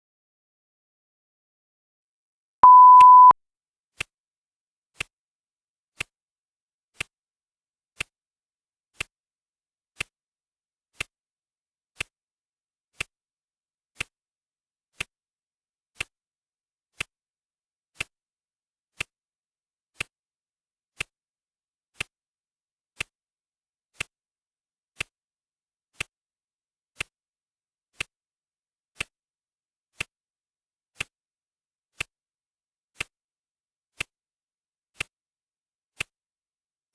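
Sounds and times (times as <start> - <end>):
electronic beep: 2.6 - 3.4.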